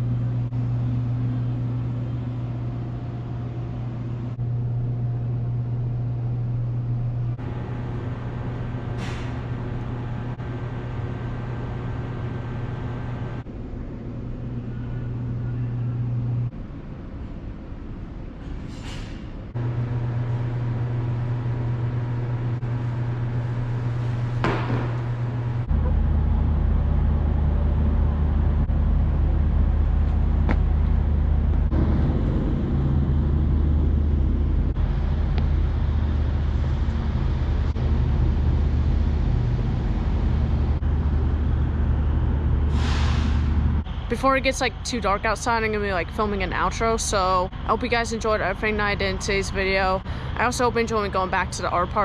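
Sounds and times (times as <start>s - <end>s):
car engine and road hum: 19.5s - 42.7s.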